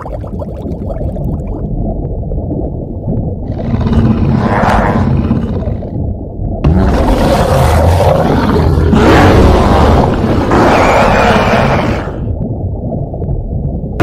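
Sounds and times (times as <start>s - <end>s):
low rumble: 0.0s - 14.0s
monster roar: 6.7s - 12.2s.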